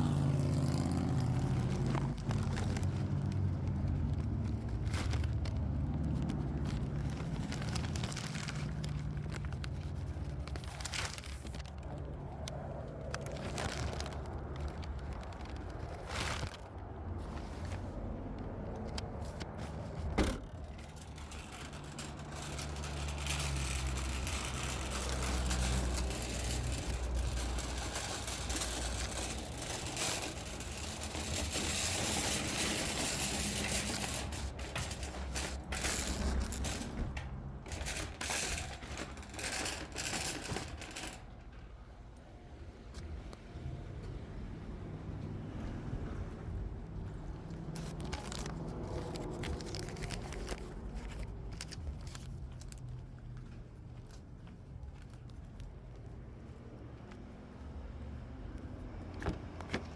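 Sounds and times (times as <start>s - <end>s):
road and engine noise: 0.0s - 59.9s
small knocks and rattles: 18.4s - 41.7s.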